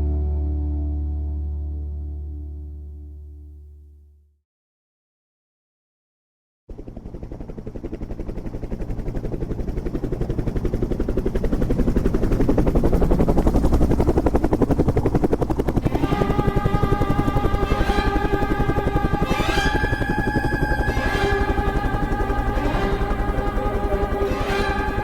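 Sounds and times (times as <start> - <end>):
helicopter rotor blades chopping: 6.7 - 25.0
steady musical notes: 15.8 - 25.0.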